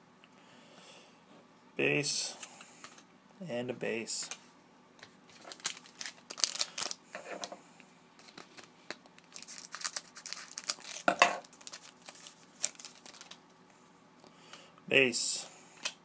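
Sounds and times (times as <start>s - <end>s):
card pack wrapper tearing: 5.3s - 7.0s, 8.2s - 13.4s.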